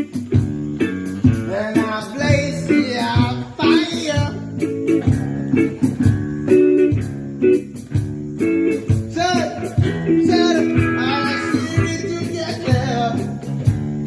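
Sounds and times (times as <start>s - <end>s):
guitar music: 0.0s - 14.0s
person singing: 1.4s - 4.5s, 9.1s - 13.6s.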